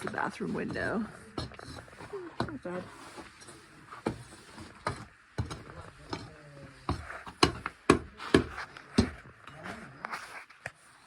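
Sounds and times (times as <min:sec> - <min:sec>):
sharp knocks: 0:06.9 - 0:09.2.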